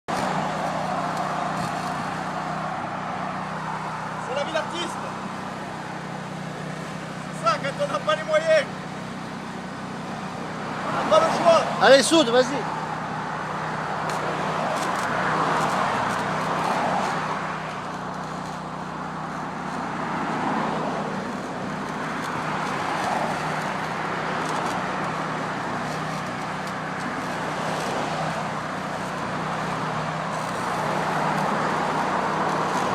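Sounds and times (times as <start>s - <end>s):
arc welding crackling hiss: 0.1s - 3.0s, 11.8s - 32.9s.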